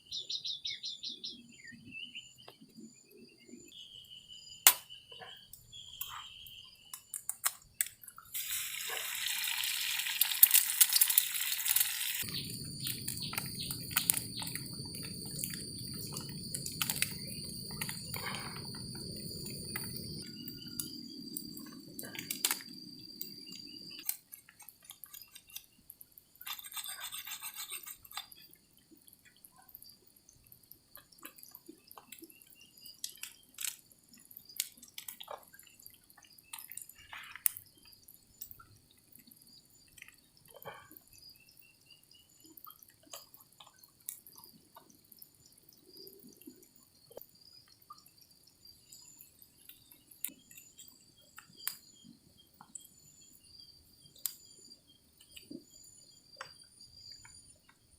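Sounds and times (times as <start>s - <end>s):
high insect trill: 2.8s - 57.9s
small clicks and taps: 6.9s - 8.2s, 33.0s - 33.8s, 34.5s - 39.3s.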